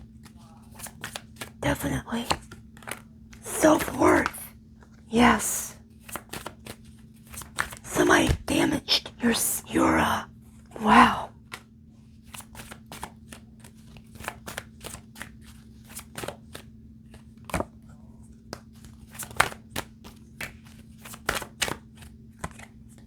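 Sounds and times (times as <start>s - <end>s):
cards being shuffled: 0.2s - 5.0s, 5.9s - 8.6s, 11.4s - 17.7s, 18.5s - 23.0s.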